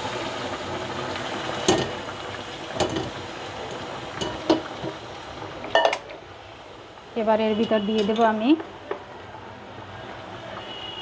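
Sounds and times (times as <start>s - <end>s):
water bubbling in pot: 0.0s - 8.9s.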